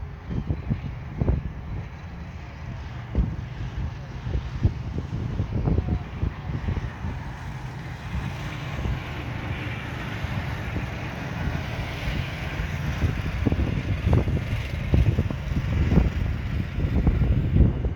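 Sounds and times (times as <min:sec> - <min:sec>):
off-road buggy engine running: 0:00.0 - 0:17.9
wind buffeting microphone: 0:00.0 - 0:17.9.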